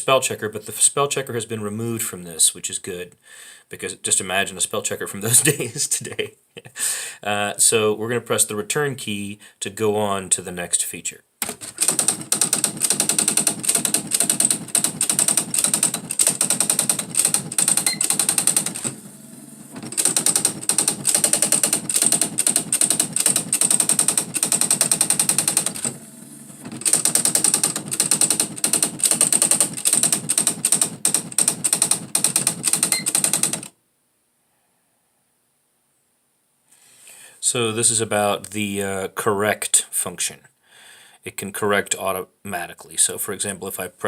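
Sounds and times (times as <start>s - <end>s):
electronic typewriter printing: 11.4s - 33.7s.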